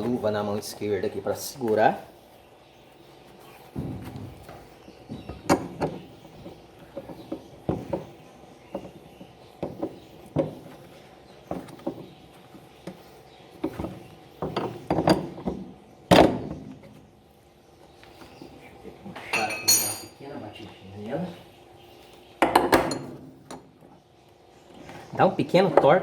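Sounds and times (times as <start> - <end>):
wrench clinking on metal: 19.4 - 20.2.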